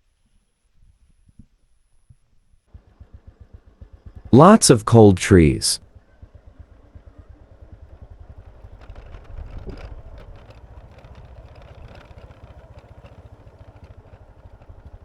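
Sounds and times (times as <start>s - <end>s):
vehicle engine running: 2.7s - 4.3s, 5.8s - 15.0s
light rattling: 8.3s - 15.0s.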